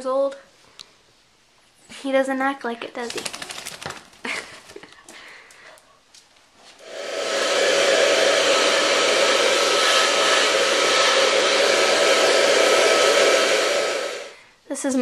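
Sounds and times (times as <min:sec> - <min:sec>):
blow dryer running: 0:06.8 - 0:14.5.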